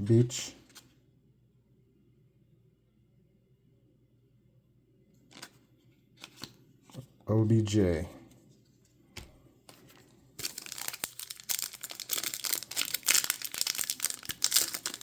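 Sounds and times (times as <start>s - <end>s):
plastic wrapper tearing and crinkling: 10.4s - 15.0s.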